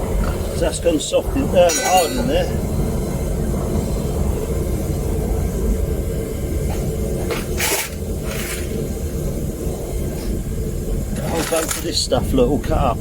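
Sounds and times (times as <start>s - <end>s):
burner rumble: 0.0s - 13.0s
brief hissing: 7.3s - 8.8s.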